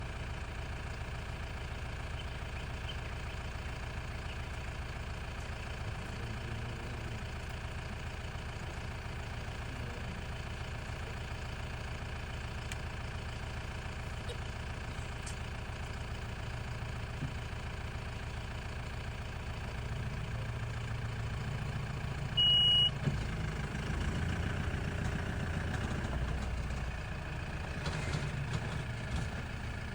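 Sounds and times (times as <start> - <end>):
vehicle engine idling: 0.0 - 29.9
short high-pitched beep: 22.4 - 22.9.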